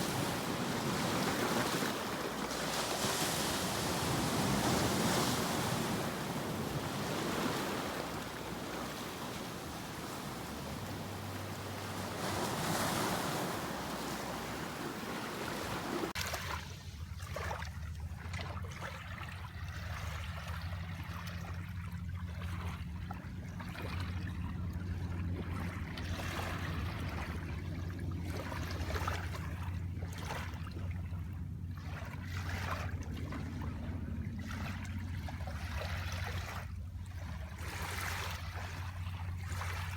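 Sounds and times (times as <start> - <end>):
ocean waves washing on shore: 0.0 - 16.8.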